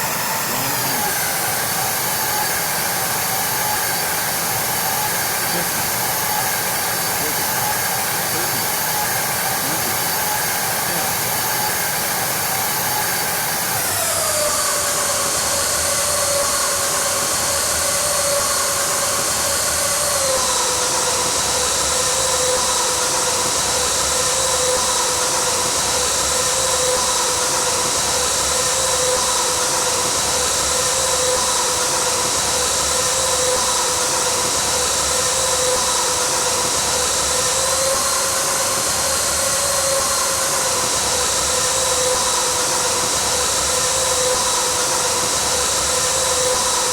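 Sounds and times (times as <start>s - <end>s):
jet engines rushing with high whine: 0.0s - 46.9s.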